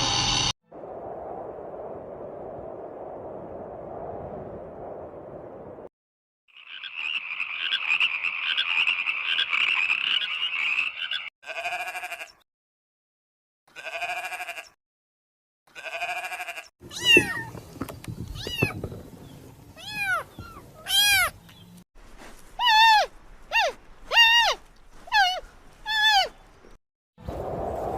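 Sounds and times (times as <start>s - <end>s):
animal cries rising and falling: 15.8s - 17.5s, 18.4s - 18.8s, 19.8s - 21.4s, 22.6s - 26.3s
rasping animal call: 22.6s - 26.4s.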